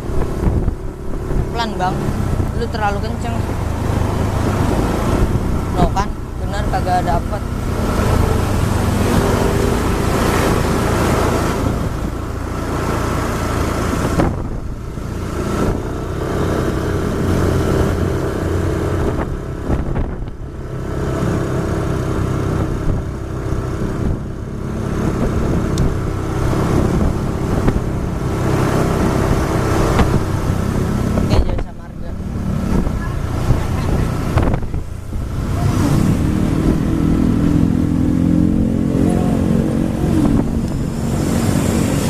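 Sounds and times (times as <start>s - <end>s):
road and wind noise: 0.0s - 42.0s
vehicle engine hum: 0.0s - 42.0s.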